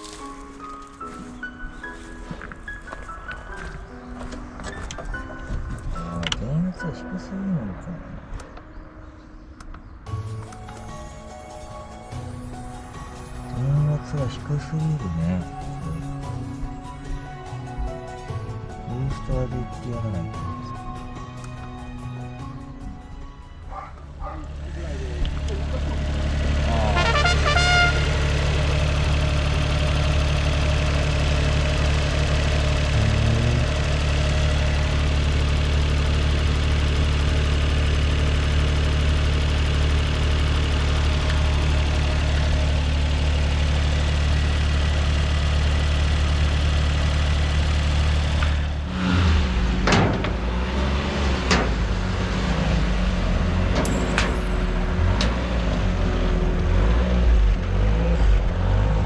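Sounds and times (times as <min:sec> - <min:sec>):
car engine idling: 0:10.3 - 0:50.8.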